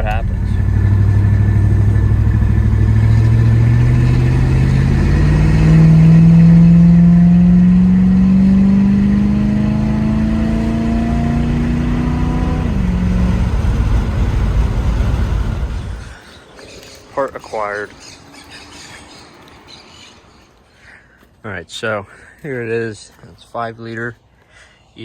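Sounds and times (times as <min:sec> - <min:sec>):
car engine accelerating: 0:00.0 - 0:16.7.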